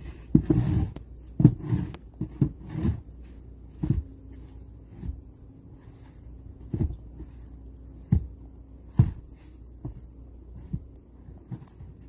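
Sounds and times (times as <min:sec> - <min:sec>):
low steady hum: 0:00.0 - 0:12.0
dull thumps: 0:03.7 - 0:12.0.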